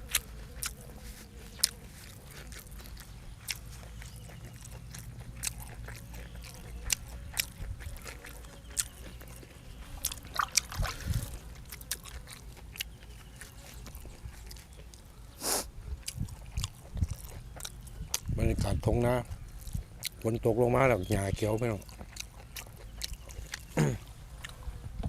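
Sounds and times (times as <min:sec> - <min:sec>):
person chewing: 0:00.0 - 0:20.5, 0:21.1 - 0:24.7
wet smacks: 0:10.0 - 0:11.4.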